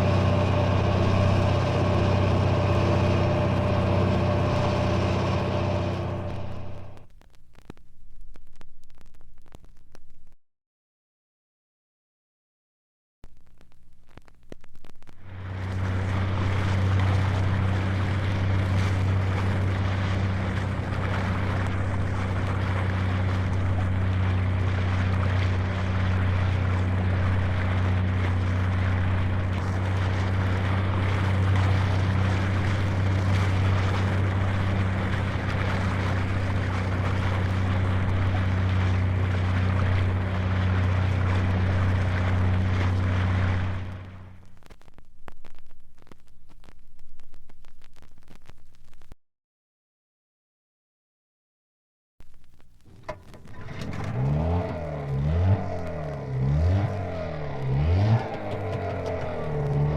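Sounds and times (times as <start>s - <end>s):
engine drone with low hum: 0.0s - 7.2s, 14.8s - 44.8s, 52.2s - 59.9s.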